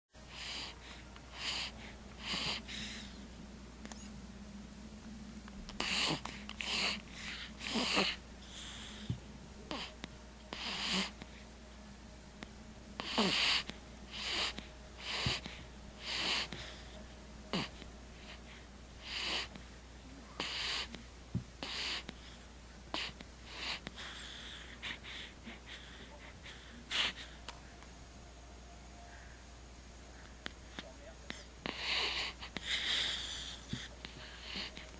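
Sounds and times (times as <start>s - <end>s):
baby snoring snuffly breaths: 0.2s - 3.2s, 5.7s - 11.5s, 13.0s - 19.7s, 20.3s - 27.4s, 30.4s - 34.9s.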